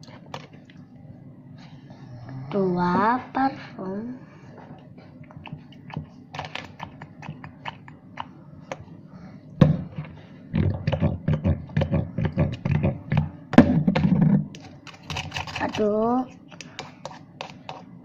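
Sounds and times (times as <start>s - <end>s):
slime being stirred clicking: 5.2s - 8.8s, 14.6s - 18.0s.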